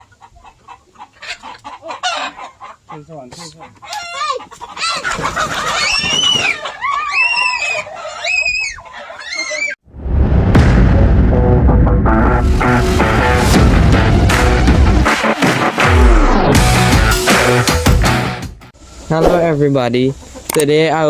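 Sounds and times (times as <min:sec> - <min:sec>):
chickens clucking: 0:00.0 - 0:09.8, 0:19.1 - 0:21.0
loud drawn-out chicken calls: 0:00.0 - 0:09.8.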